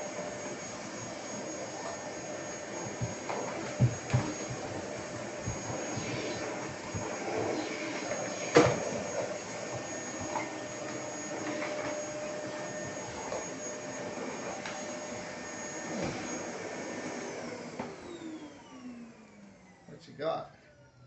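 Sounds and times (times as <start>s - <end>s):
vacuum cleaner whining: 0.0s - 21.0s.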